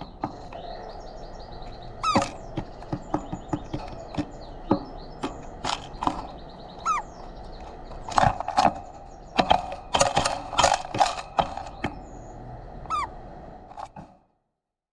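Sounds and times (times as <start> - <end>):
bird falling call: 0.0 - 7.4, 12.9 - 13.2.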